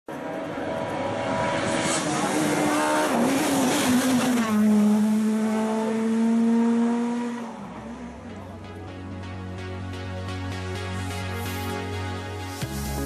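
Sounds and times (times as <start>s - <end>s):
rally car engine revving: 0.1s - 8.6s.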